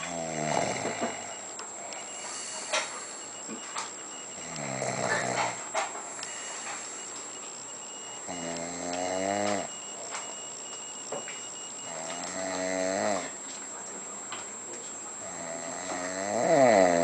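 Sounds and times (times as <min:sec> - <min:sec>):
person snoring: 0:00.0 - 0:01.4, 0:04.4 - 0:05.6, 0:08.3 - 0:09.7, 0:11.8 - 0:13.3, 0:15.2 - 0:17.0.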